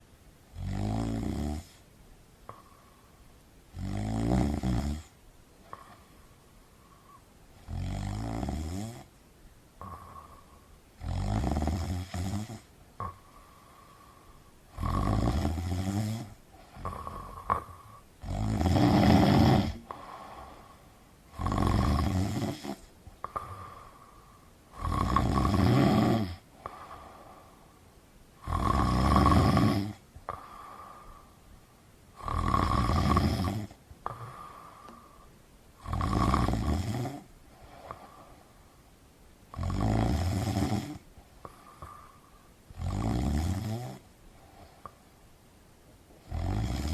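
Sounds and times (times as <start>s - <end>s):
quiet breathing: 0.0s - 46.9s
person snoring: 0.5s - 1.8s, 3.7s - 5.1s, 7.6s - 9.1s, 9.8s - 27.5s, 28.4s - 31.4s, 32.2s - 35.2s, 35.8s - 38.4s, 39.5s - 44.1s, 46.2s - 46.9s.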